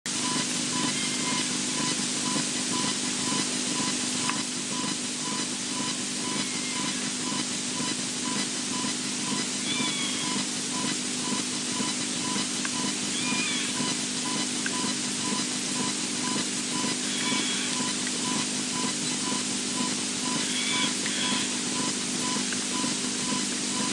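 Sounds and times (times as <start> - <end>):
pulsing beep: 0.2 - 23.9
faint whistling animal calls: 5.3 - 7.4, 9.6 - 10.4, 13.1 - 14.0, 16.7 - 23.9.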